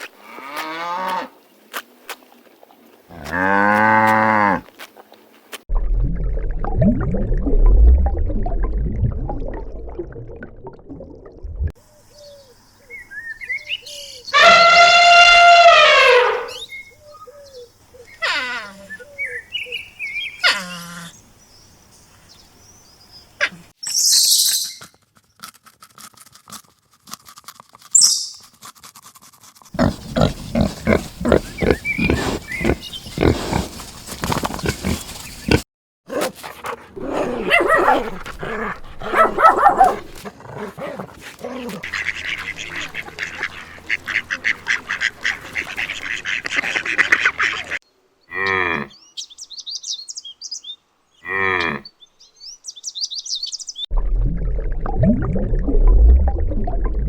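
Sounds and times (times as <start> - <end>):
animal calls: 13.9 - 19.4, 29.8 - 33.8.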